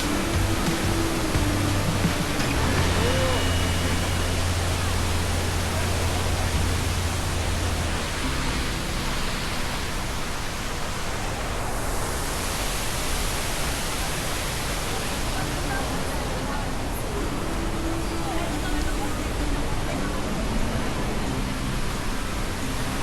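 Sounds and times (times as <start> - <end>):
low steady hum: 0.0 - 10.9
waterfall rushing: 0.0 - 23.0.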